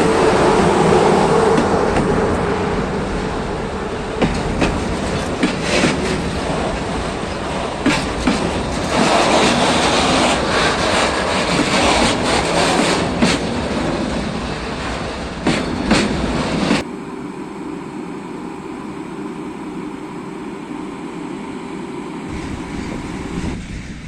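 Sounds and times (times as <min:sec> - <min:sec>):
train rumbling past: 0:00.0 - 0:24.0
wheels clacking over rail joints: 0:04.1 - 0:16.8.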